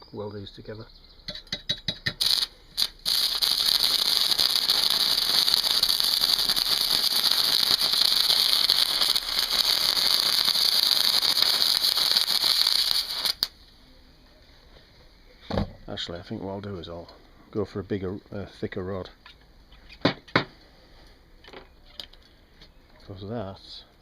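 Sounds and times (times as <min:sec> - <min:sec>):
welding arc crackling: 0:01.6 - 0:13.6.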